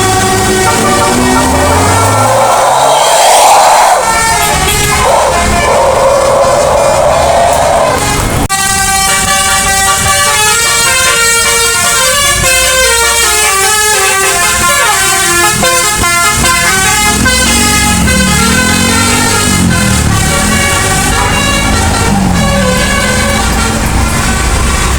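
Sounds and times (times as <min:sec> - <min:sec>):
bus musical horn tune: 0:00.0 - 0:02.2, 0:04.0 - 0:05.9, 0:07.8 - 0:24.9
lower wavering horn notes: 0:00.0 - 0:08.4.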